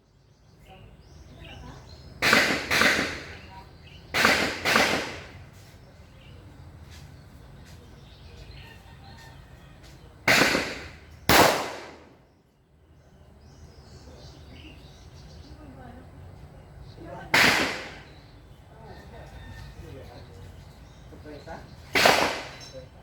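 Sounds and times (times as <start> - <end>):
gunshots with short echo: 2.2 - 3.5, 4.1 - 5.5, 10.2 - 12.2, 17.3 - 18.2, 21.9 - 22.7.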